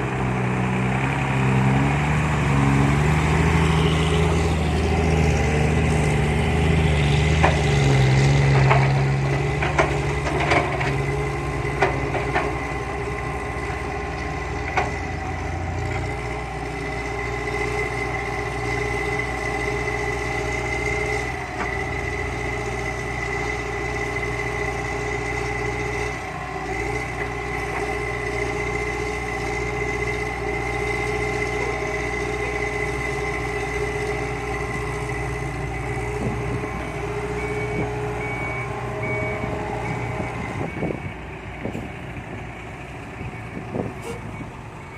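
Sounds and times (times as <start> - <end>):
excavator diesel engine running: 0.0 - 44.9
soil loading into truck: 4.5 - 16.1
hydraulic whine: 24.5 - 42.0.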